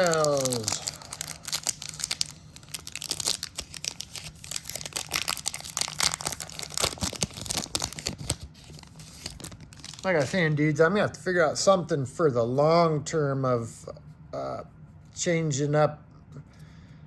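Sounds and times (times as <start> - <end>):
cards being handled: 0.0 - 10.4
foil wrapper crinkling: 0.0 - 10.4.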